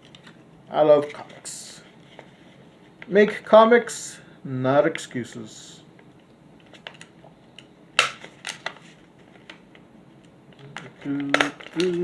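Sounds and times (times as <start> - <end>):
person humming: 10.6 - 12.0.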